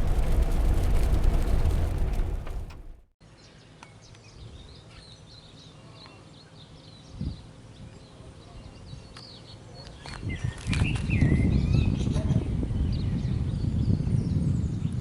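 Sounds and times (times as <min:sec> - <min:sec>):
low outdoor rumble: 0:00.0 - 0:03.1
low thump: 0:00.0 - 0:03.1
small birds chirping: 0:03.3 - 0:14.4.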